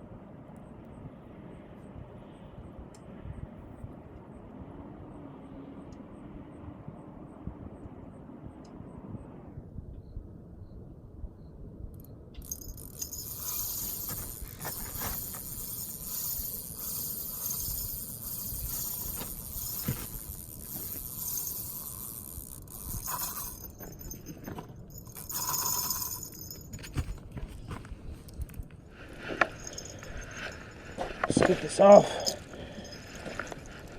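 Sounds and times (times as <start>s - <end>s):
fishing reel ratcheting: 12.0s - 26.7s, 29.6s - 30.6s.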